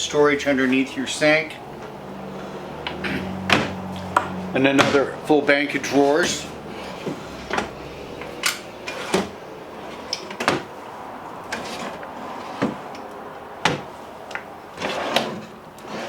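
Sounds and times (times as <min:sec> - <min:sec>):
drawers opening and shutting: 0:02.8 - 0:05.1, 0:05.7 - 0:10.8, 0:11.4 - 0:16.0.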